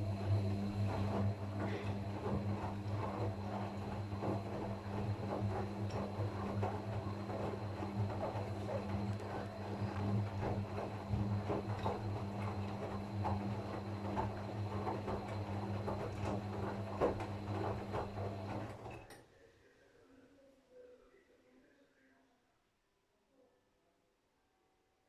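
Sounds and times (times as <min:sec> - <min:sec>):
washing machine motor humming: 0:00.0 - 0:19.1
laundry tumbling in drum: 0:00.3 - 0:18.9.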